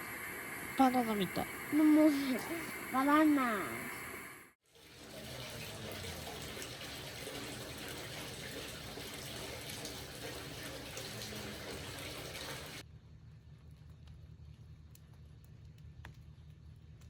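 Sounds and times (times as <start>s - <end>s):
water running: 0.0s - 12.8s.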